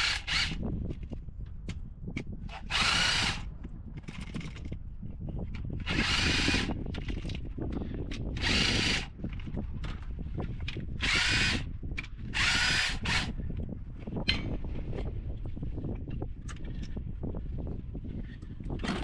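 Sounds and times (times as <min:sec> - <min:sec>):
cordless drill whirring: 0:00.0 - 0:00.6, 0:02.5 - 0:03.5, 0:05.8 - 0:07.3, 0:08.3 - 0:09.2, 0:10.9 - 0:11.7, 0:12.3 - 0:13.4.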